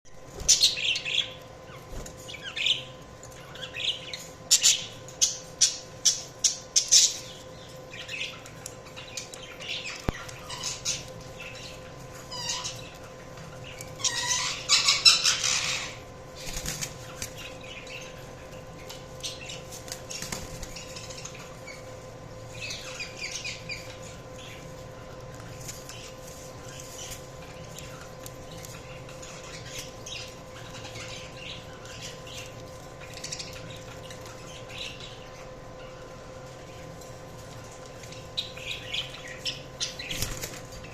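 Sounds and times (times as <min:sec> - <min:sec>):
budgerigars chirping and chattering: 0:00.2 - 0:40.9.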